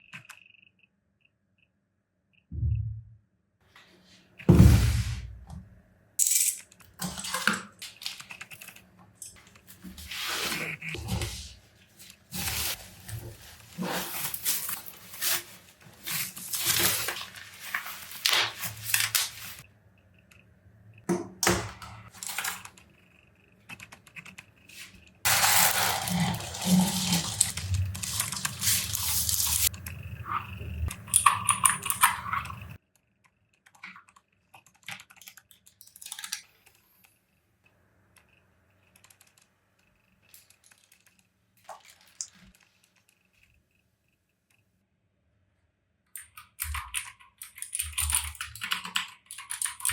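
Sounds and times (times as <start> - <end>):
packaging rustling and tearing: 9.4 - 19.6, 25.3 - 29.7.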